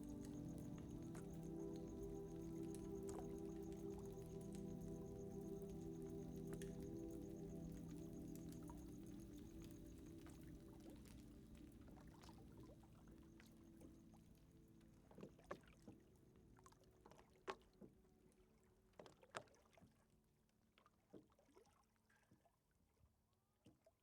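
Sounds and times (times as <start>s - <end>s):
fire crackling and popping: 0.0s - 12.0s
low steady drone: 0.0s - 12.0s.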